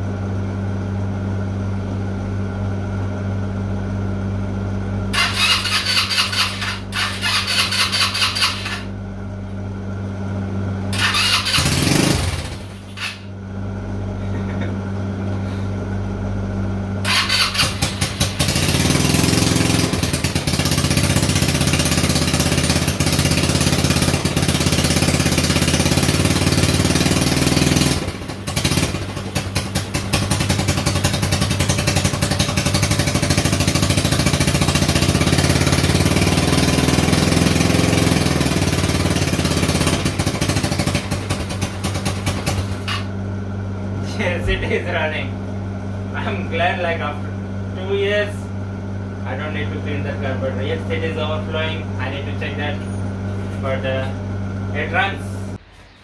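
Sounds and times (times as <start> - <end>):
small motorcycle engine running: 5.1 - 9.0, 10.9 - 15.8, 16.6 - 45.3.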